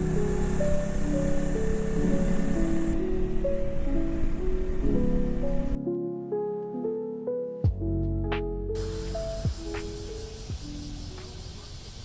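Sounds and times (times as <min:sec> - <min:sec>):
steady low backing: 0:00.0 - 0:05.8
melody of held notes: 0:00.0 - 0:11.2.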